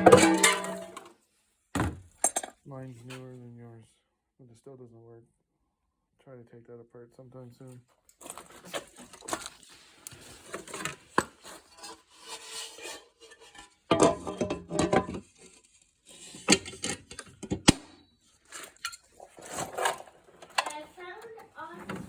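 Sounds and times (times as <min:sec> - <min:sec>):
scrap objects clattering: 0:00.0 - 0:01.1, 0:08.2 - 0:17.2, 0:18.4 - 0:22.0.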